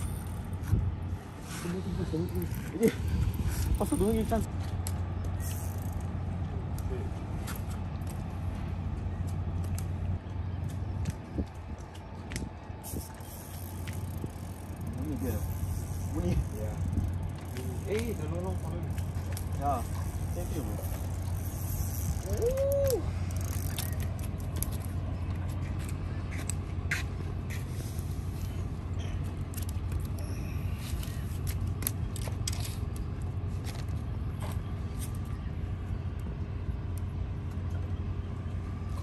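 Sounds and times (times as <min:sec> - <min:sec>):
steady low hum: 0:00.0 - 0:39.0
fishing reel clicking: 0:05.4 - 0:06.1, 0:12.8 - 0:24.2.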